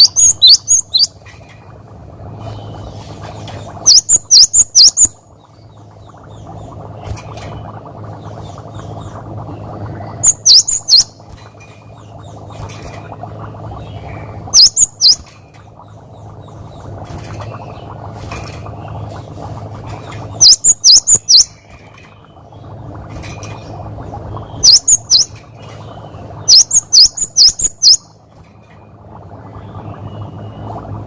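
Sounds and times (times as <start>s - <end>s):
bird sharp chirps: 0.0s - 1.1s, 10.0s - 11.3s, 13.9s - 15.3s, 20.3s - 21.8s, 24.5s - 28.1s
steady low hum: 0.0s - 31.0s.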